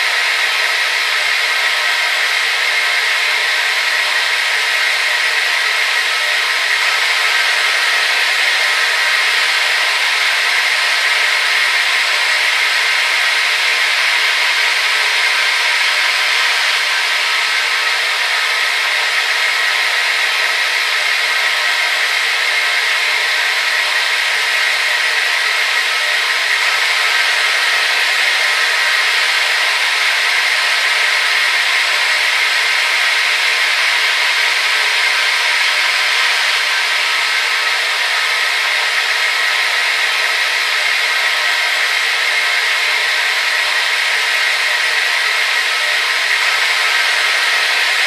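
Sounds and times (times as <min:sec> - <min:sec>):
hair dryer running: 0:00.0 - 0:48.0.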